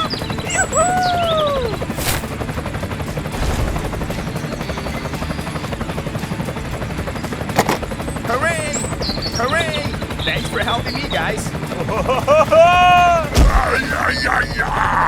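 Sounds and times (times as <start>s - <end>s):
short gliding whoops: 0.0s - 2.3s
sharp click: 7.6s - 7.9s.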